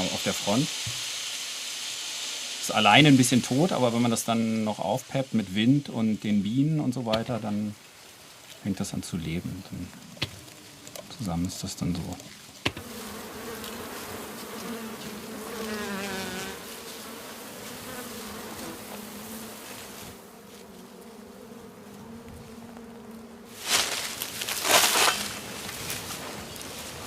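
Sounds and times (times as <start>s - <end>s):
grass stalks rustling: 0.0s - 12.8s, 18.5s - 27.0s
soft wind: 0.7s - 27.0s
bee swarm buzzing: 9.1s - 27.0s.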